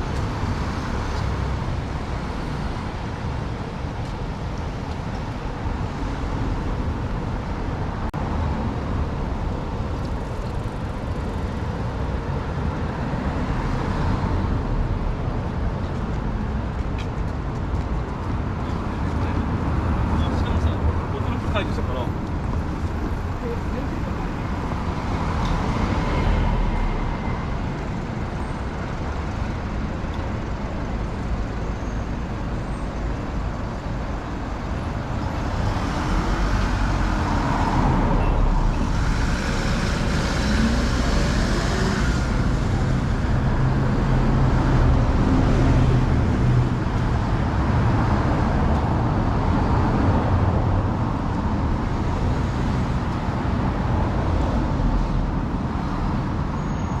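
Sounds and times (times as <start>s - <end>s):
vehicles driving past: 0.0s - 57.0s.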